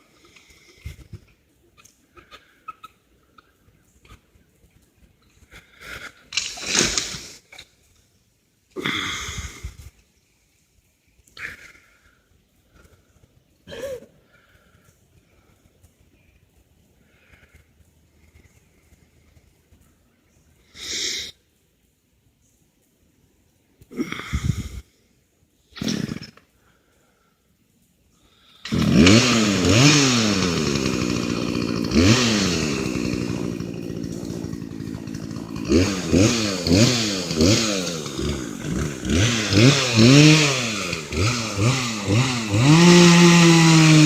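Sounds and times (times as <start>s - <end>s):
chainsaw engine revving: 6.3s - 7.4s, 25.8s - 26.4s, 28.6s - 44.0s.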